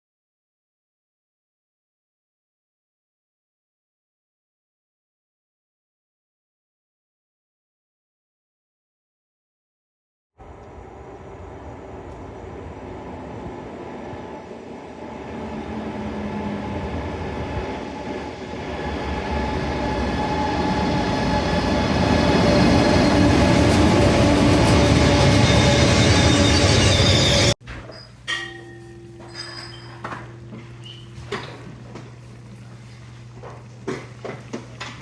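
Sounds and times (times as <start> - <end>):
train rumble and rail noise: 10.4 - 27.6.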